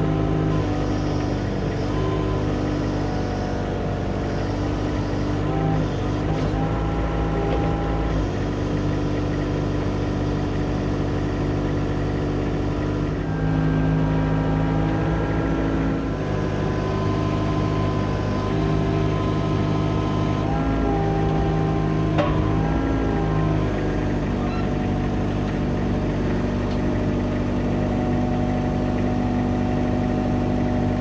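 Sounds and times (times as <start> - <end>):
excavator diesel engine running: 0.0 - 31.0.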